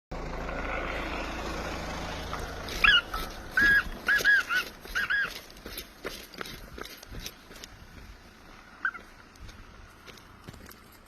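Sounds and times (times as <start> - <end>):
partridge calling: 2.8 - 5.5, 8.8 - 9.2.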